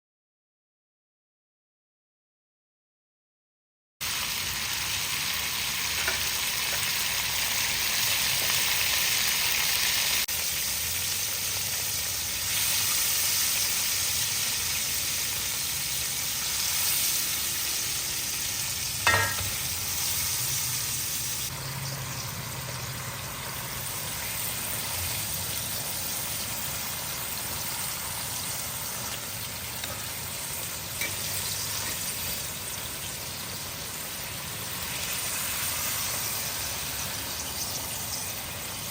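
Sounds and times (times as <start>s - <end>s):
hot oil sizzling: 4.0s - 38.9s
sharp clink: 19.0s - 19.6s.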